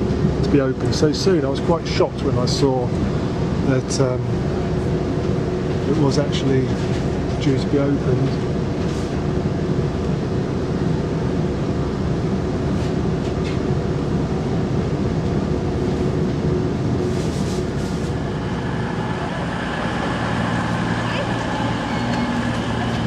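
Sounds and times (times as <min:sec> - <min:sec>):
train wheels rumbling: 0:15.2 - 0:23.0
steady whine: 0:16.7 - 0:23.0.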